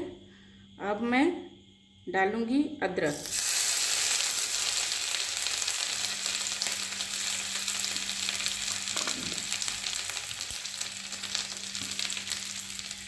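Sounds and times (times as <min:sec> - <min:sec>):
ginger sizzling in hot fat: 0:03.0 - 0:13.0.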